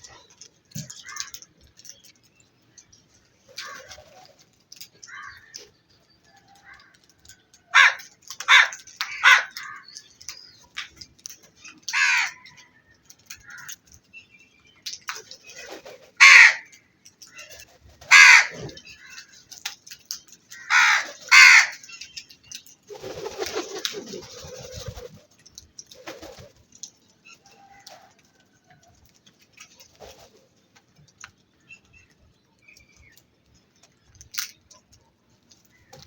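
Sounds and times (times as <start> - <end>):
crows cawing: 5.0 - 5.6, 7.7 - 9.9, 11.9 - 12.6, 13.4 - 13.8, 16.2 - 16.8, 18.1 - 19.3, 20.5 - 21.9.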